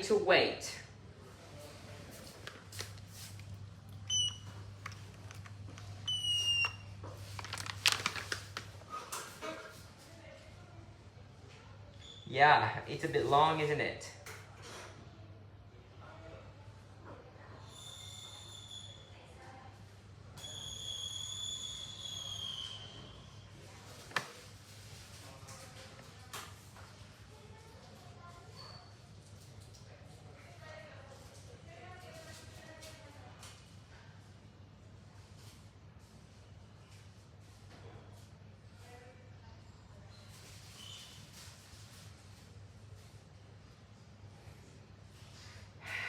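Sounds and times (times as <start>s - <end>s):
high-pitched whistle-like tone: 20.4s - 23.2s.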